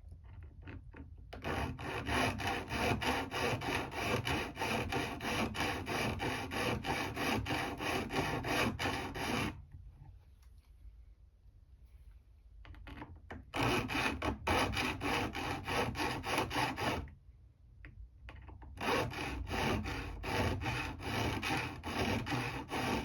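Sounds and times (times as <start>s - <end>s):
hand file scraping steel: 1.4s - 9.6s, 13.5s - 17.1s, 18.8s - 23.0s.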